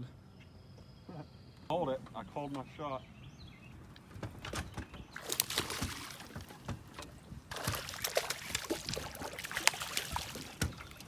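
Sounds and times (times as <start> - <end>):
water splashing against boat: 5.1 - 11.0.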